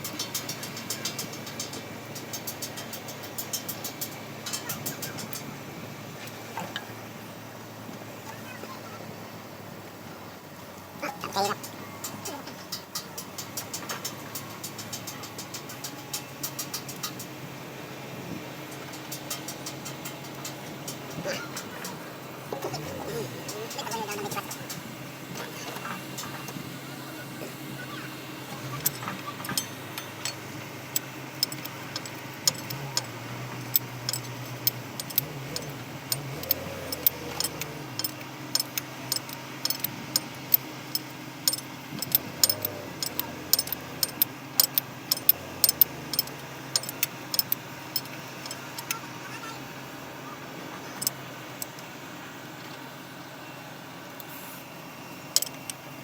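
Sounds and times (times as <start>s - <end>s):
low machinery hum: 20.3s - 56.0s
hand tools clicking on metal: 28.6s - 49.0s, 50.9s - 51.8s, 55.3s - 55.8s.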